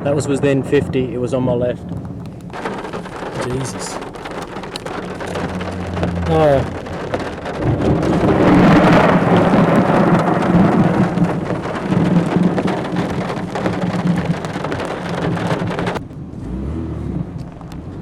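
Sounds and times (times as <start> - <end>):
loud rolling thunder: 0.0 - 16.0
heavy rain: 0.0 - 16.1.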